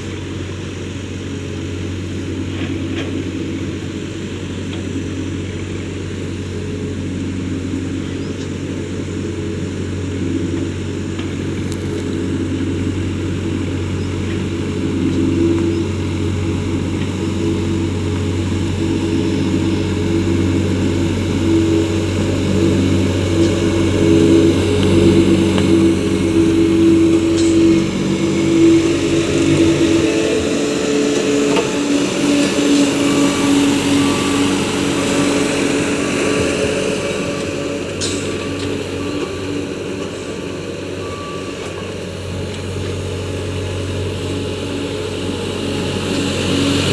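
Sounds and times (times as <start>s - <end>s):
road roller engine running: 0.0s - 46.9s.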